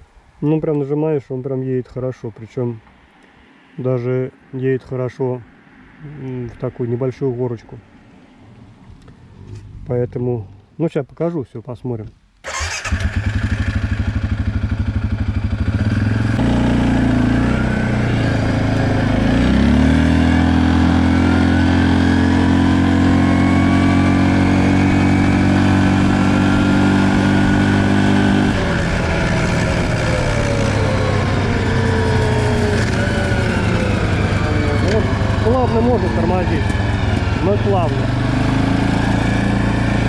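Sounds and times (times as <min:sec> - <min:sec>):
atv engine revving: 0:12.5 - 0:40.0.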